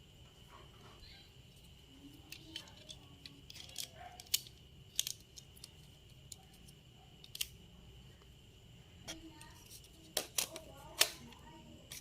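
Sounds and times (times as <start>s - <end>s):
sharp clicks and light rattles: 2.2s - 7.6s.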